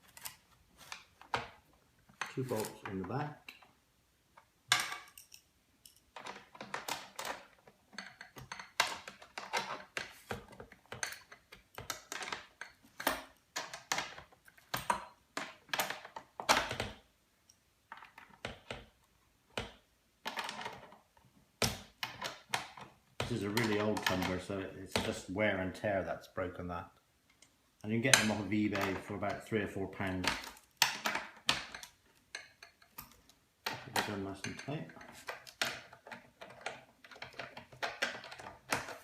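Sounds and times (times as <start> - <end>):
hand tool clicking and scraping: 0.0 - 1.4, 2.1 - 3.7, 27.3 - 39.0.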